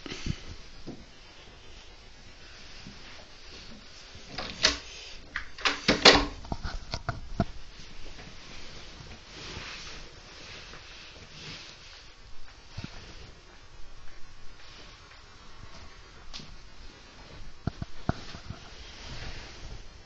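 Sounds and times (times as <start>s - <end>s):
soft hiss: 0.0s - 20.0s
sharp clicks and knocks: 4.3s - 7.6s.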